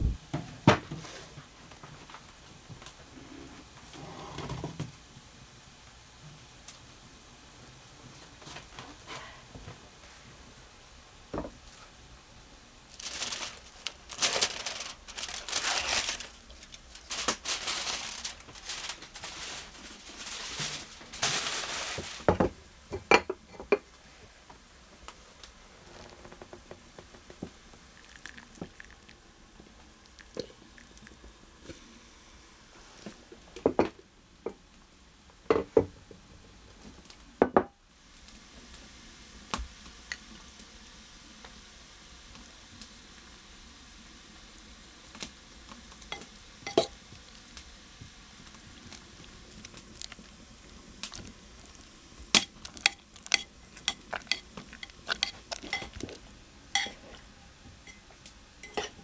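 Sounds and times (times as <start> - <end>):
rustling and crinkling: 12.9 - 22.6, 45.7 - 59.0.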